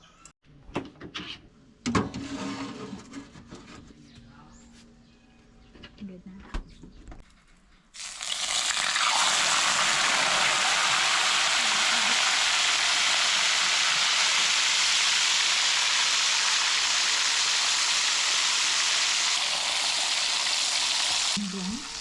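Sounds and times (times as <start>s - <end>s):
fish sizzling in hot oil: 8.0s - 22.0s.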